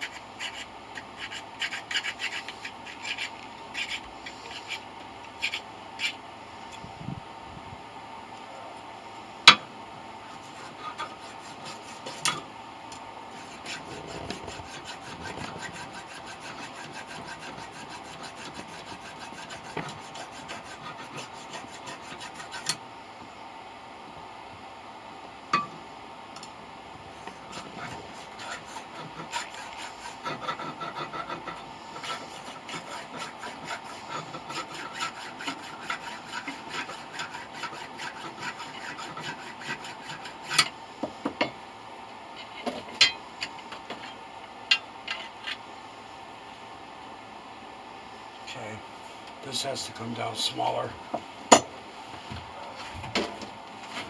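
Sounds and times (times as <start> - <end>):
file rasping: 0.0 - 6.2, 10.3 - 12.4, 13.3 - 22.8, 27.2 - 40.7.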